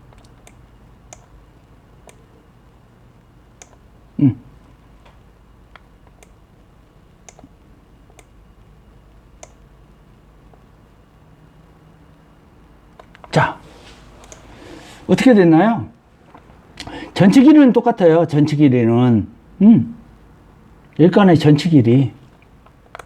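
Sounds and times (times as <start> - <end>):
computer mouse clicking: 0.1 - 1.4, 2.0 - 2.3, 3.6 - 3.9, 5.0 - 6.4, 7.2 - 8.4, 9.4 - 9.6, 14.2 - 14.5, 22.3 - 23.0.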